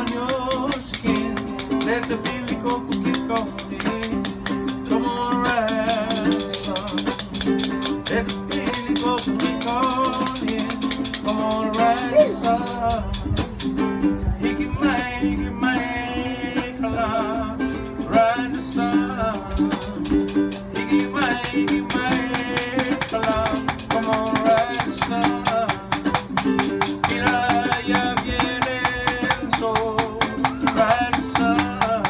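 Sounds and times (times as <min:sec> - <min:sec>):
light percussive taps: 0:00.0 - 0:04.9, 0:05.7 - 0:13.8, 0:19.4 - 0:32.0
plucked acoustic guitar: 0:00.0 - 0:32.0.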